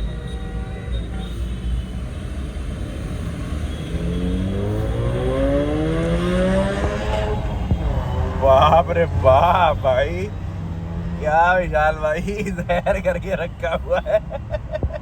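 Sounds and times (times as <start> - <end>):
car engine revving up: 3.4 - 11.7.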